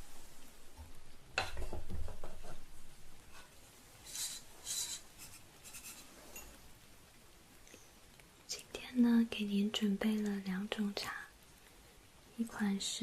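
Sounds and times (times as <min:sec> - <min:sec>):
ceramic scraping and rubbing: 0:03.3 - 0:06.6.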